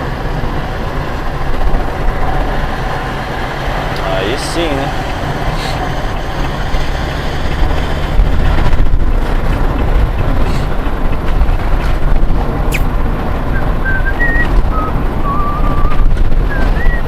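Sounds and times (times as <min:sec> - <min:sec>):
vehicle engine and road noise: 0:00.0 - 0:17.0.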